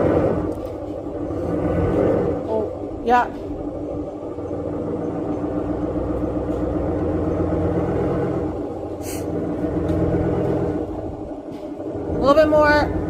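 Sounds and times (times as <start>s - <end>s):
truck engine at low revs: 0.0s - 13.0s
brief air hiss: 9.0s - 9.3s.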